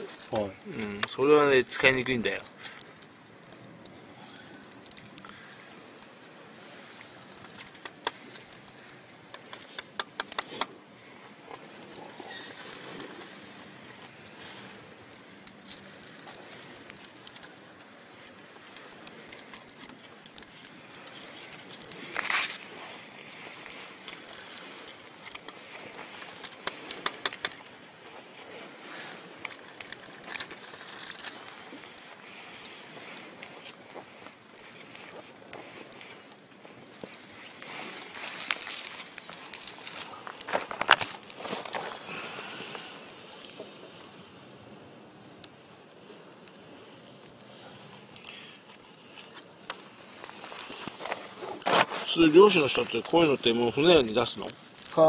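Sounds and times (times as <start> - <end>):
steady background hiss: 0.0 - 55.0
water: 0.0 - 55.0
wind: 0.0 - 55.0
hands handling materials: 4.6 - 44.2, 46.4 - 55.0
sharp clicks and taps of tools: 9.3 - 10.7, 26.4 - 27.6.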